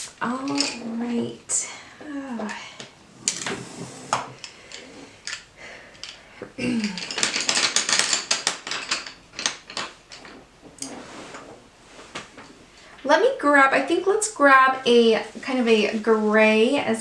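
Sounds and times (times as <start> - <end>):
colored pencils clattering: 0.0 - 1.2, 2.3 - 11.5.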